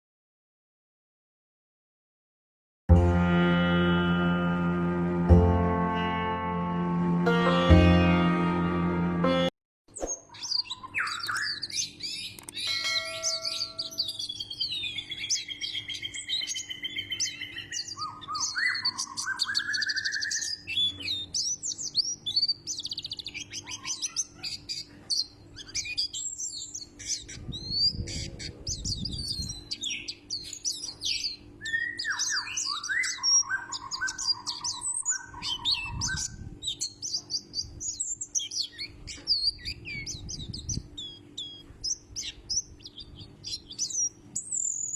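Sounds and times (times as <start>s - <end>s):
bird chirping and twittering: 9.9s - 44.9s
bird whistled phrases: 10.0s - 12.3s, 13.2s - 24.9s, 30.8s - 37.2s.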